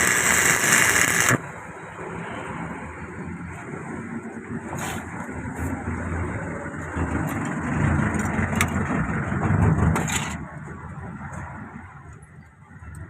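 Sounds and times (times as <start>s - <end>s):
arc welding crackling: 0.0s - 1.5s.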